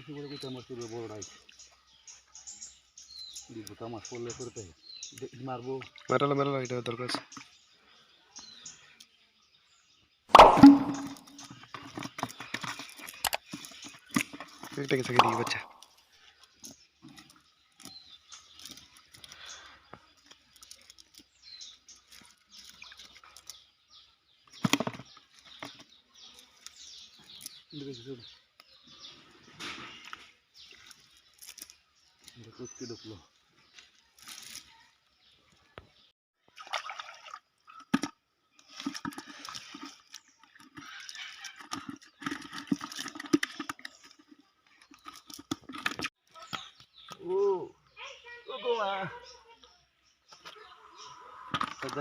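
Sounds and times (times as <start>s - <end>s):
birds chirping: 0.0s - 52.0s
pond water splashing: 5.1s - 7.5s, 10.2s - 16.4s, 17.1s - 25.0s, 36.4s - 46.5s.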